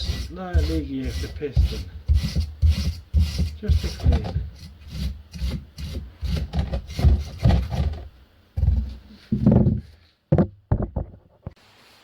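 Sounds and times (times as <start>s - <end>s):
hand scrubbing metal part: 0.0s - 7.4s.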